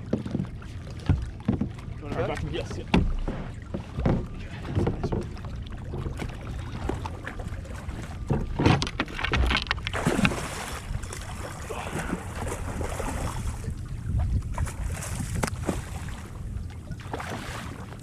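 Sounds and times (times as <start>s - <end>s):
water sloshing around kayak: 0.0s - 18.0s
wind rumbling on microphone: 0.0s - 18.0s
knocks on kayak: 0.2s - 6.3s.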